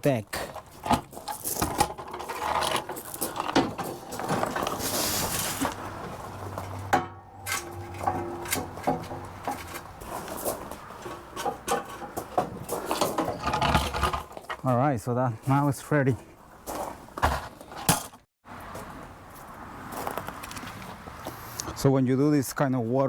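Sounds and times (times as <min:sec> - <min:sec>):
metallic clanks and rattles: 0:00.7 - 0:04.9, 0:05.6 - 0:14.6.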